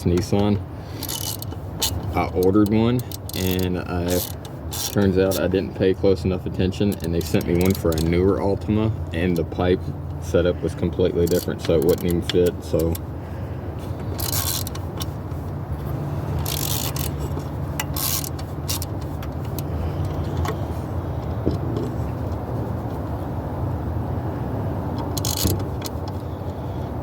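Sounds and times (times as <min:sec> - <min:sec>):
steady low hum: 0:00.0 - 0:27.0
ratcheting screwdriver clicking: 0:14.1 - 0:15.1, 0:16.4 - 0:20.6, 0:25.0 - 0:26.2.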